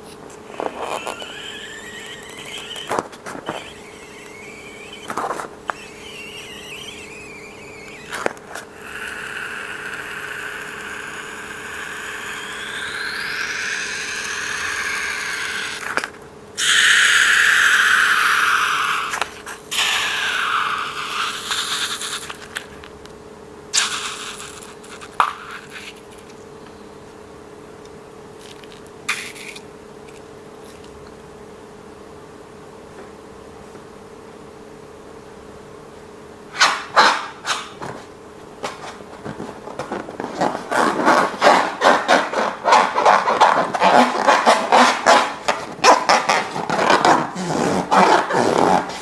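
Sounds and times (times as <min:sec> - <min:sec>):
balloon squealing: 0:00.5 - 0:11.1, 0:36.6 - 0:49.0.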